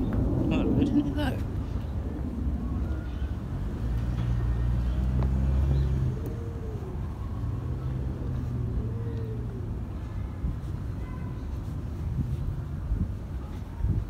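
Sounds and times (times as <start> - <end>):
vehicle engine humming: 0.0 - 10.9.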